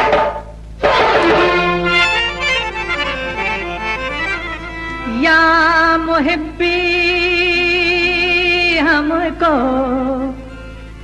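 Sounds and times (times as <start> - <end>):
reedy instrument melody: 0.8 - 7.6.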